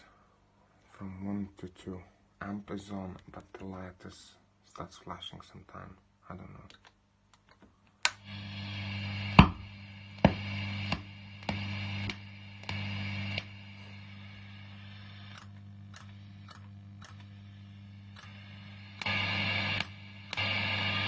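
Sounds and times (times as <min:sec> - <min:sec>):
amplifier mains hum and hiss: 0:00.0 - 0:21.0
amplifier popping: 0:08.0 - 0:21.0.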